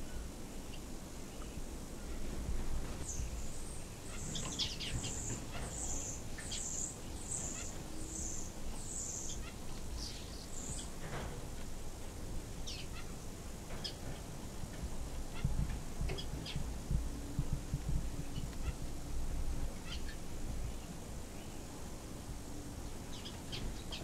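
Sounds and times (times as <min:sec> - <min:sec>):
low background rumble: 0:00.0 - 0:24.0
small birds chirping: 0:03.0 - 0:11.2, 0:19.8 - 0:21.8.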